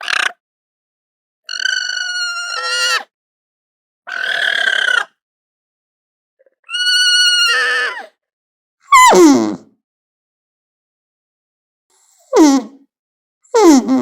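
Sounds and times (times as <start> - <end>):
alpaca high-pitched cries: 1.5 - 3.1, 4.1 - 5.1, 6.7 - 8.1.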